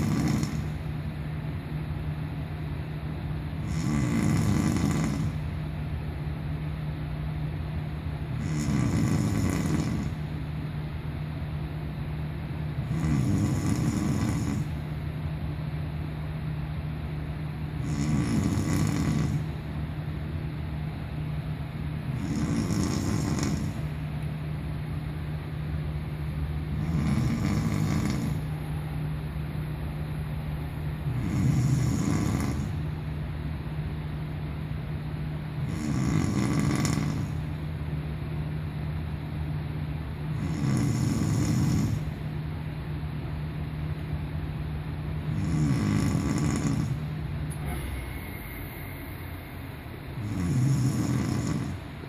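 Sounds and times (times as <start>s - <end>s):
person snoring: 0.0s - 0.8s, 3.6s - 5.5s, 8.3s - 10.2s, 12.8s - 14.8s, 17.8s - 19.5s, 22.1s - 23.9s, 26.7s - 28.5s, 31.1s - 32.8s, 35.6s - 37.4s, 40.3s - 42.2s, 45.3s - 49.4s, 50.2s - 51.9s
steady low hum: 0.0s - 52.0s.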